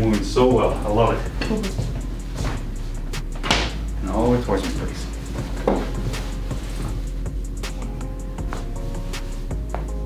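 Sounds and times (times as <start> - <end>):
back cracking: 0.0 - 10.0
background music: 0.0 - 10.0
short thump: 1.3 - 3.8.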